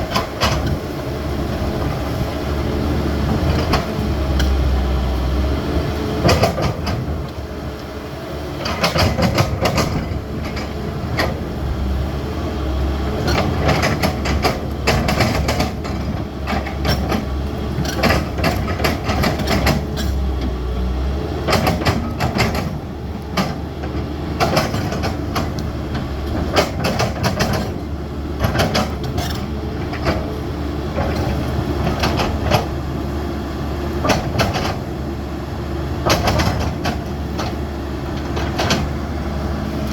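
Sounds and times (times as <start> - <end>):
excavator diesel engine running: 0.0 - 39.9
metallic clanks and knocks: 13.2 - 20.2, 21.5 - 27.8.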